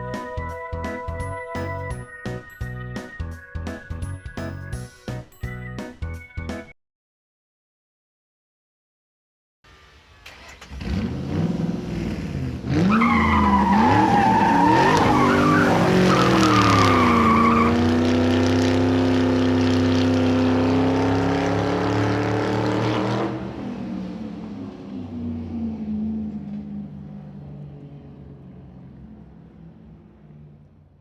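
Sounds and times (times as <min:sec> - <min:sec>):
vehicle engine revving: 0:10.2 - 0:31.0
high squeal: 0:12.9 - 0:17.8.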